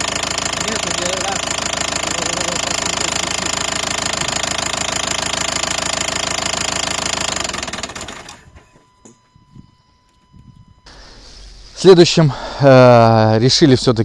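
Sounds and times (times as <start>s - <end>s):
diesel engine knocking: 0.0s - 8.4s.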